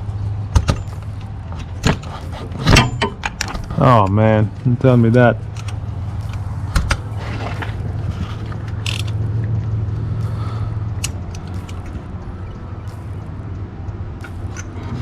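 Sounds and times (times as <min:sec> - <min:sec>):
steady low hum: 0:00.0 - 0:15.0
sharp clicks: 0:05.4 - 0:07.1, 0:08.6 - 0:15.0.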